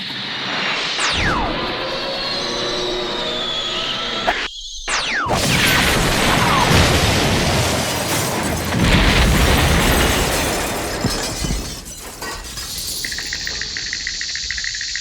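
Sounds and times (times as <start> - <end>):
cartoon explosion blast: 4.2 - 10.3.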